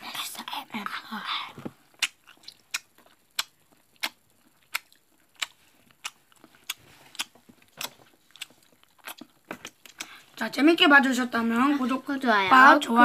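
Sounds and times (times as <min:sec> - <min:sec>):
chewing cheese close-up: 0:01.9 - 0:10.2
wet mouth clicks: 0:01.9 - 0:10.2.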